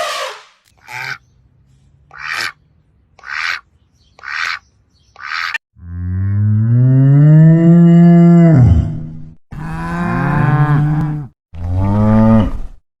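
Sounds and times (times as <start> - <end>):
cow mooing: 9.6 - 12.8.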